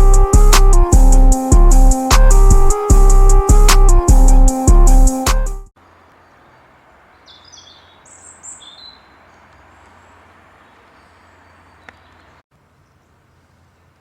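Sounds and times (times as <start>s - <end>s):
high bird chirps: 6.2s - 13.0s.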